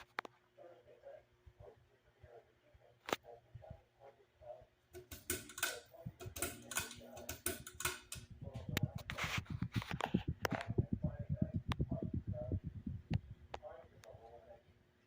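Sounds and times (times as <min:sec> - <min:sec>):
cat scratching at door: 0:05.0 - 0:11.9
rhythmic knocking: 0:05.0 - 0:13.7.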